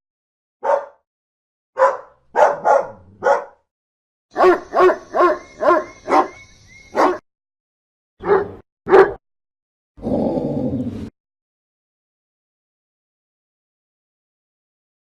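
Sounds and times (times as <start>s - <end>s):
dog barking: 0.6s - 1.0s, 1.8s - 3.6s, 4.3s - 7.2s, 8.2s - 9.2s.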